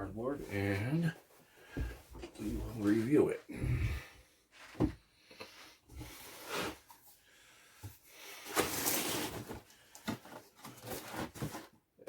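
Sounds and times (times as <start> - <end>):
rustling and scraping: 0.1 - 5.1, 8.3 - 11.9.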